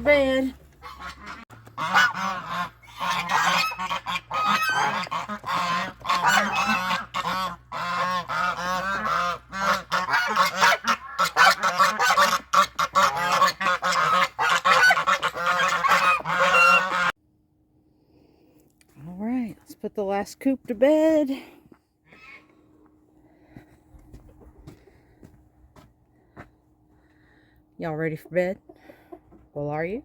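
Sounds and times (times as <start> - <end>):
poultry flock calling: 0.0 - 17.2.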